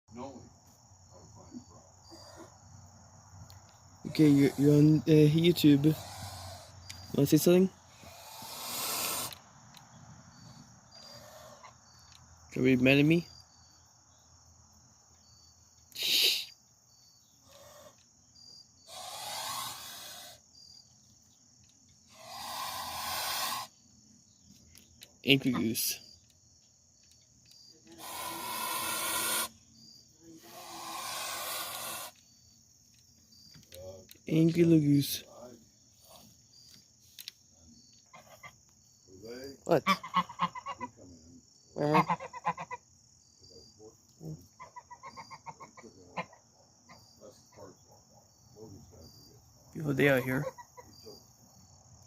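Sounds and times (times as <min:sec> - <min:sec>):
goose hissing: 0:04.1 - 0:09.4, 0:11.0 - 0:11.8, 0:15.9 - 0:16.6, 0:17.4 - 0:18.0, 0:18.8 - 0:20.4, 0:22.1 - 0:23.8, 0:27.9 - 0:29.6, 0:30.4 - 0:32.2
goose calling: 0:05.7 - 0:06.8, 0:18.9 - 0:20.4, 0:28.0 - 0:29.6, 0:30.4 - 0:32.2, 0:39.7 - 0:41.0, 0:41.8 - 0:42.8
goose honking: 0:39.8 - 0:41.0, 0:41.8 - 0:42.8.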